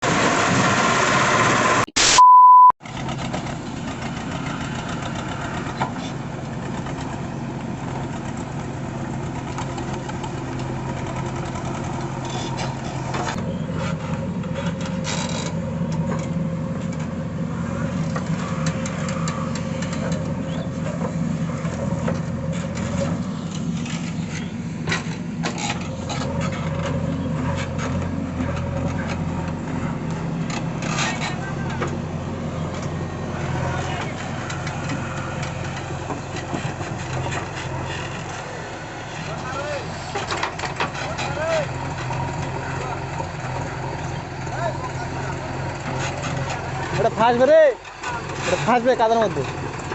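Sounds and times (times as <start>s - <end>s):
diesel engine running: 0.0s - 49.9s
steady beep: 2.0s - 2.8s.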